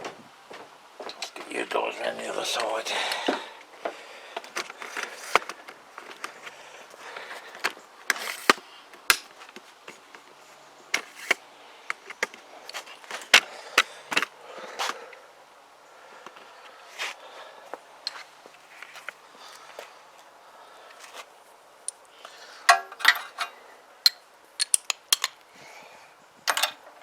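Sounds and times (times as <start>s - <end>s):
objects clicking and knocking: 4.4s - 14.3s, 24.1s - 25.4s.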